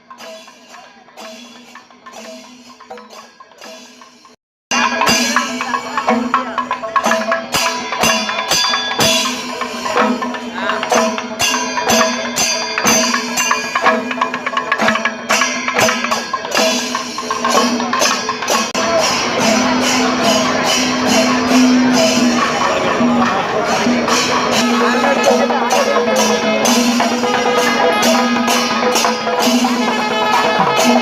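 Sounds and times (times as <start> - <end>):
rapid dense percussion: 0.0 - 31.0.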